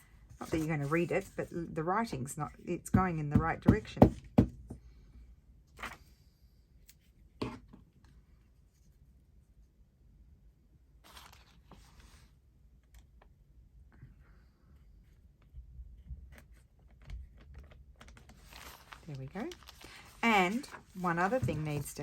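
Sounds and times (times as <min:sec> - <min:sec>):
paper rustling: 0:11.0 - 0:12.3, 0:16.3 - 0:22.0.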